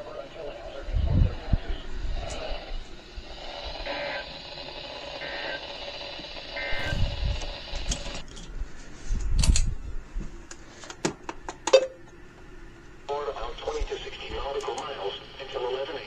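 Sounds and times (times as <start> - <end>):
buzzy digital data tones: 0.0 - 8.2
radio hiss: 0.0 - 8.2, 13.1 - 16.0.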